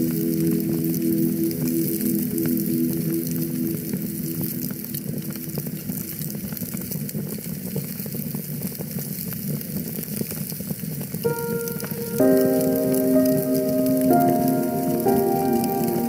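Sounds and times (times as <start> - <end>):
piano-like music note: 0.0 - 5.8, 11.3 - 16.0
wood fire crackling: 0.0 - 16.0.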